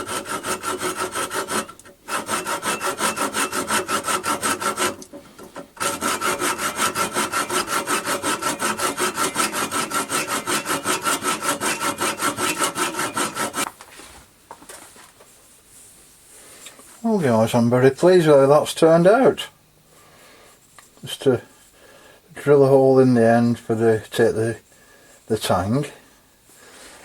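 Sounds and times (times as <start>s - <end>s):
rasping rub on spinning wood: 0.0s - 13.7s
lathe running tone: 5.8s - 13.6s.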